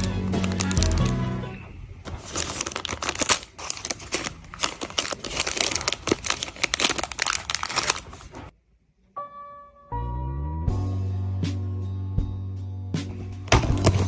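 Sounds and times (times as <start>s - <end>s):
packaging crinkling and tearing: 0.0s - 1.3s, 2.1s - 8.5s, 13.5s - 14.0s.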